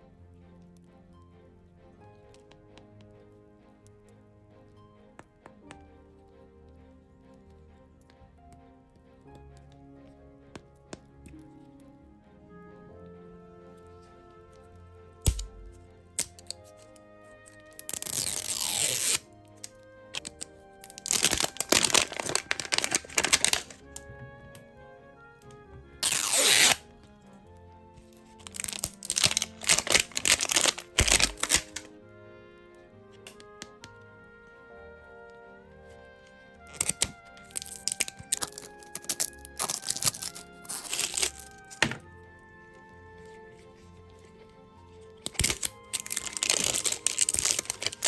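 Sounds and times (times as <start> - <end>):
soft background music: 0.0 - 48.0
sharp crack: 15.2 - 16.6, 17.6 - 23.8, 28.4 - 31.9
packaging tearing and crinkling: 15.2 - 16.9, 17.6 - 23.8, 26.0 - 26.8, 28.3 - 31.9, 36.7 - 42.1, 45.2 - 48.0.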